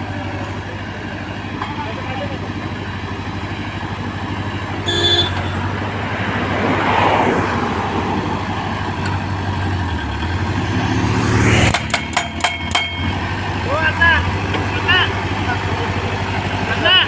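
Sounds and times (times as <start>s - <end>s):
heavy vehicle engine running: 0.0s - 17.0s
road traffic: 0.0s - 17.0s
vehicle horn toot: 4.7s - 5.9s.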